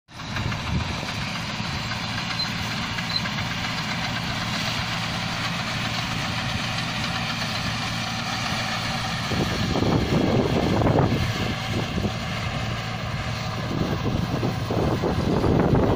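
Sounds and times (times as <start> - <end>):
harvester diesel engine running: 0.1 - 15.9
rough rush of noise: 0.2 - 15.9.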